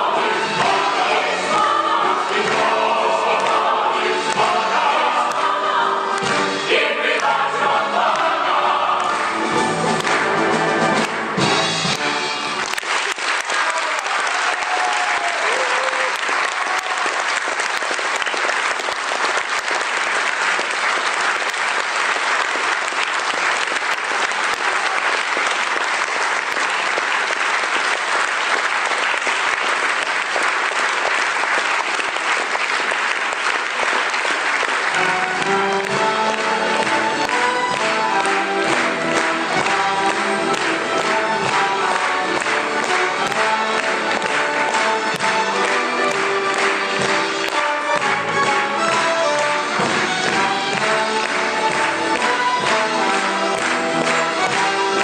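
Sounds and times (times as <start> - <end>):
choral music: 0.0 - 13.1, 34.4 - 55.0
audience applauding: 0.0 - 55.0.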